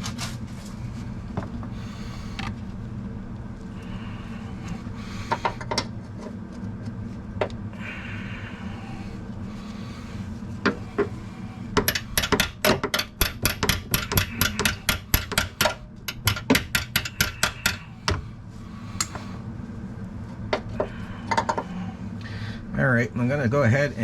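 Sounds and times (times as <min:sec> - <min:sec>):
hammer tapping on metal: 0:11.8 - 0:18.2.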